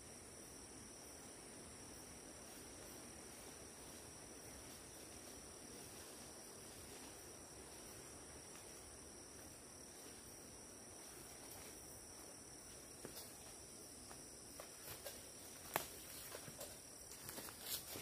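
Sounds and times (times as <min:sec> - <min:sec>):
insects chirping: 0:00.0 - 0:18.0.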